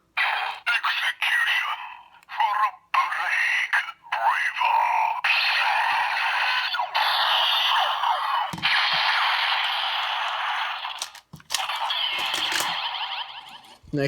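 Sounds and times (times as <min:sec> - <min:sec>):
toy electronic sound effects: 0:00.2 - 0:13.8
sharp clicks: 0:10.3 - 0:12.8.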